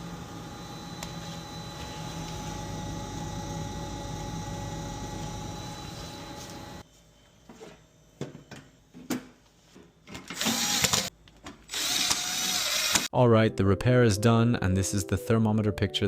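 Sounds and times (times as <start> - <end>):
machine hum with tones: 0.0 - 8.7.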